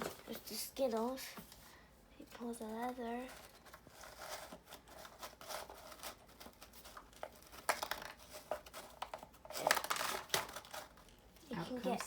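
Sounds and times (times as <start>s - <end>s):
cardboard scraping and rustling: 2.6s - 11.2s.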